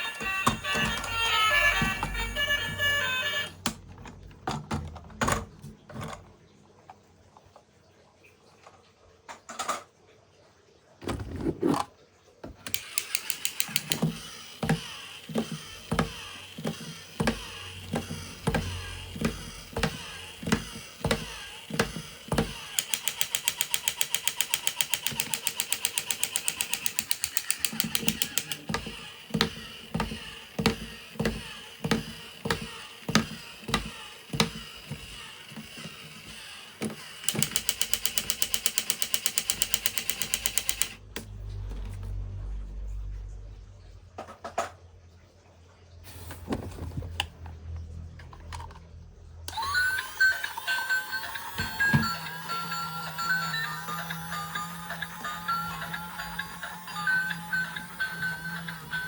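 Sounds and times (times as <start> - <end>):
toy plastic gears rattling: 0.0 - 3.6, 12.6 - 41.0, 49.5 - 59.0
toy mechanism clicks: 0.0 - 3.8, 12.6 - 41.3, 49.5 - 59.0.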